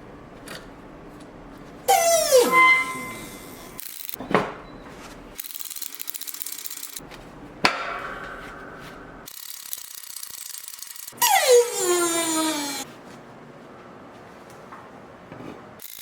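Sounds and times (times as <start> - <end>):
scraping and rubbing on metal: 1.9 - 3.8
rapid clicking of hand tool: 5.4 - 7.0, 9.3 - 11.2.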